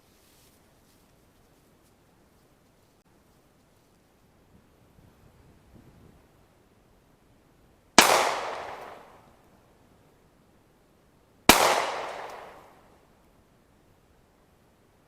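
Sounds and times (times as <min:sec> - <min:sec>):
pistol shot with echo: 0:08.0 - 0:09.2, 0:11.5 - 0:12.8.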